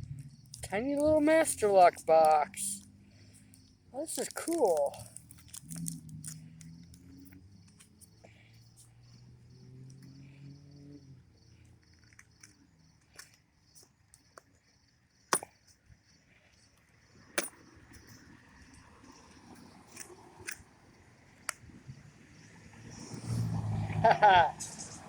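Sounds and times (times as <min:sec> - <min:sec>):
sharp metallic clicks: 0:00.0 - 0:08.1, 0:17.3 - 0:18.8, 0:19.5 - 0:20.7
padlock and packaging handled: 0:00.4 - 0:09.2, 0:11.5 - 0:21.7.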